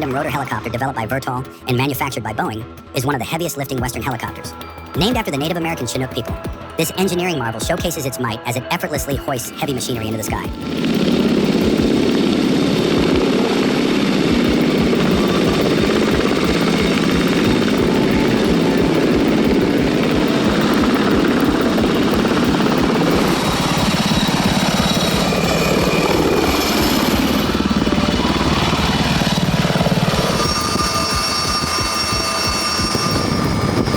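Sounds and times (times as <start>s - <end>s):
helicopter engine noise: 0.0s - 33.9s
helicopter rotor blades beating: 0.0s - 33.9s.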